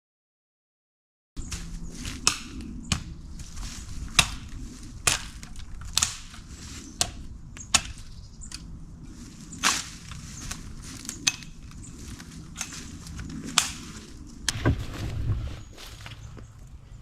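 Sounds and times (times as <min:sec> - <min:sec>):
sharp cracks and snaps: 0:01.6 - 0:08.7, 0:09.6 - 0:14.6.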